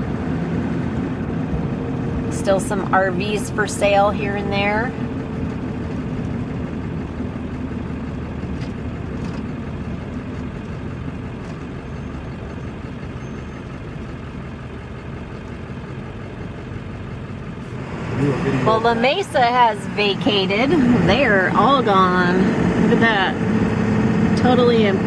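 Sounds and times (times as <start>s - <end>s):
road noise: 0.0s - 25.0s
vehicle engine hum: 0.0s - 25.0s.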